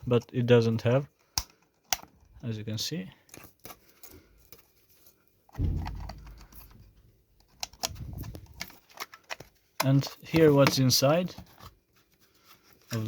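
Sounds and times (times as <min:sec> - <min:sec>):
dull bump: 0:05.6 - 0:07.1
plastic case clicking and rattling: 0:07.5 - 0:10.8.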